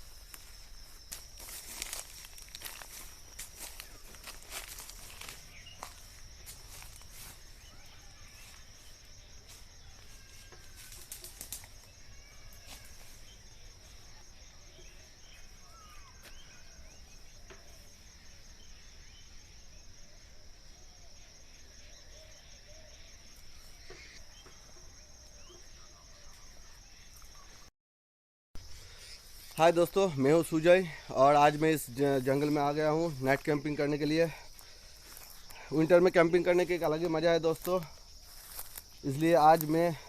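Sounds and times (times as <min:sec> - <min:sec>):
sharp crackles underfoot: 0:00.0 - 0:13.2, 0:36.5 - 0:40.0
high-pitched insect trill: 0:00.0 - 0:27.7, 0:28.6 - 0:40.0
bird chirps: 0:05.1 - 0:06.1.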